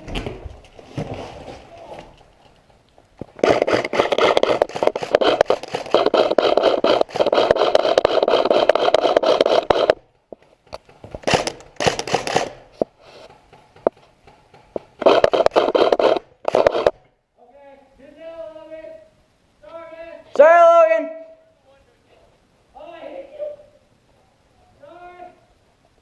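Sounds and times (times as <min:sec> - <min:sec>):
airsoft gun firing full auto: 0:11.2 - 0:12.6.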